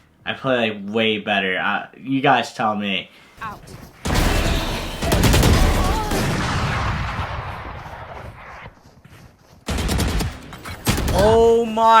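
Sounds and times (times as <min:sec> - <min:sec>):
loud blast: 0:04.1 - 0:08.6.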